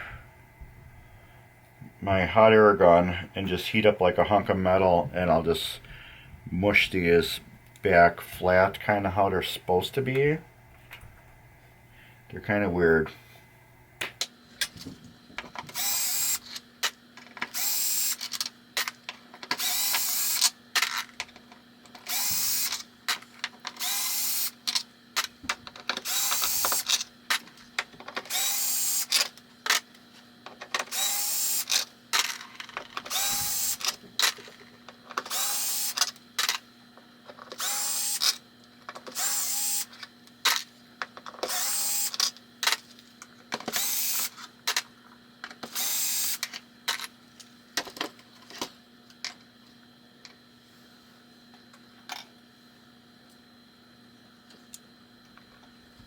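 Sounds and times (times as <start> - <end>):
cordless drill driving screws: 15.7 - 16.5, 17.5 - 18.4, 19.6 - 20.5, 22.1 - 22.8, 23.8 - 24.6, 26.0 - 27.0, 28.3 - 29.2, 30.9 - 31.8, 33.1 - 34.0, 35.3 - 36.0, 37.6 - 38.4, 39.2 - 39.9, 41.5 - 42.2, 43.7 - 44.4, 45.7 - 46.4.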